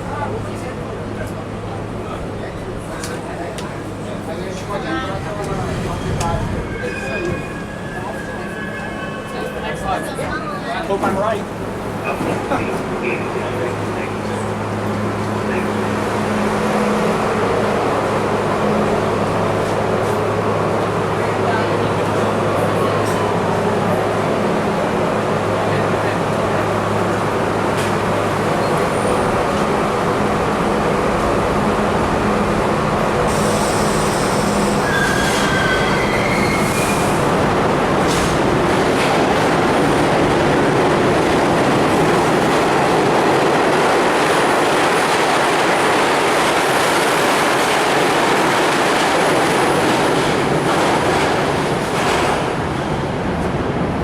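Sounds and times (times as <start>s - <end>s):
subway train wheels rumbling on rails: 0.0s - 54.0s
high wheel squeals: 5.8s - 10.4s, 33.3s - 37.2s.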